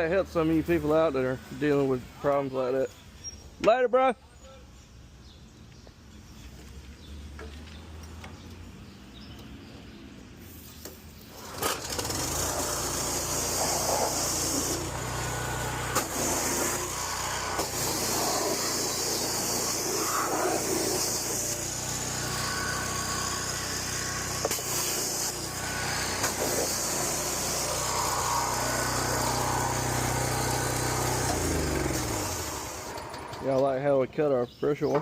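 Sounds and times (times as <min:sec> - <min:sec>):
hiss: 0:10.4 - 0:15.0, 0:15.9 - 0:21.8, 0:24.4 - 0:33.1
small gasoline engine running: 0:11.3 - 0:33.6.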